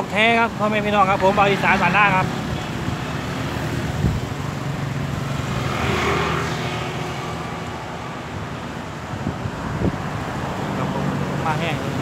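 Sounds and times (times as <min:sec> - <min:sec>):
vehicle engine humming: 0:00.0 - 0:12.0
wind noise: 0:03.6 - 0:12.0.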